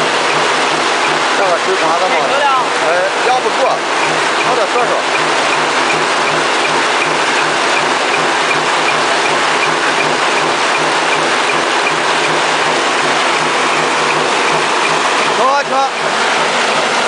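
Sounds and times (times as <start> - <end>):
machine mechanical beat: 0.0 - 17.0.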